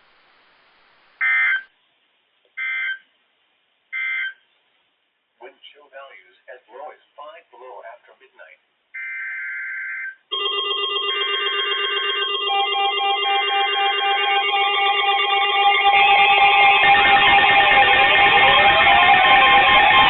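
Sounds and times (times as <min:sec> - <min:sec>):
electronic alarm beeps: 0:01.2 - 0:01.7, 0:02.6 - 0:03.0, 0:04.0 - 0:04.4, 0:09.0 - 0:10.5, 0:11.5 - 0:20.0
sweeping alarm tone: 0:01.2 - 0:01.7, 0:09.0 - 0:20.0.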